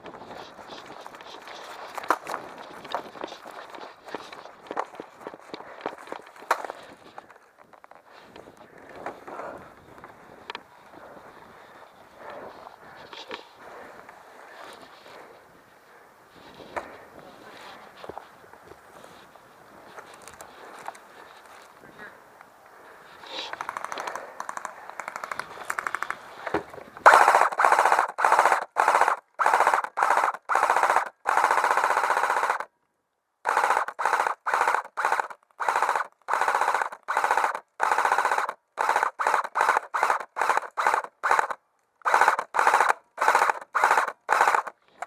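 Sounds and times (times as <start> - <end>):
airsoft guns firing bursts: 23.5 - 26.2, 27.0 - 32.7, 33.5 - 44.8.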